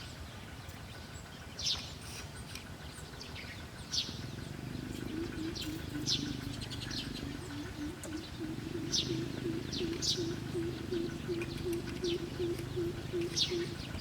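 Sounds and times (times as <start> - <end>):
birds chirping: 0.0 - 14.0
outdoor background noise: 0.0 - 14.0
low wavering sound: 4.3 - 14.0.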